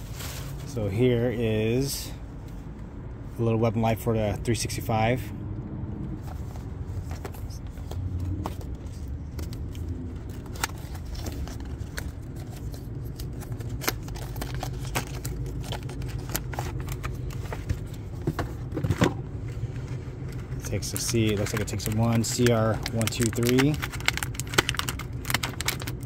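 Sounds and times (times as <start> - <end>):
steady low rumble: 0.0 - 26.0
packaging clicks and crinkles: 7.2 - 18.0, 20.3 - 26.0.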